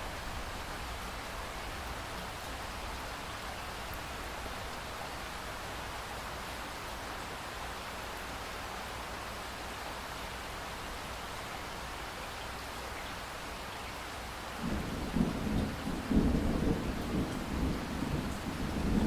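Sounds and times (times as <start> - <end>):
thunder rumbling: 14.6 - 19.0.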